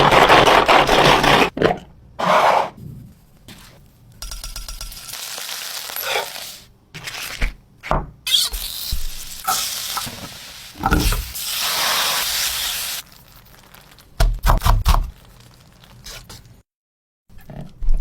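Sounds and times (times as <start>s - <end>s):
utensils knocking against pan: 4.2s - 5.2s
food sizzling in a pan: 4.8s - 6.7s, 8.4s - 14.2s, 15.1s - 16.6s.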